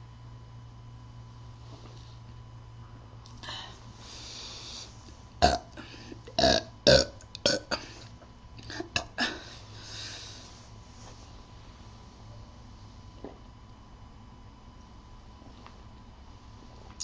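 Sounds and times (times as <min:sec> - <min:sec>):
man burping: 0:05.4 - 0:07.9, 0:08.7 - 0:09.3.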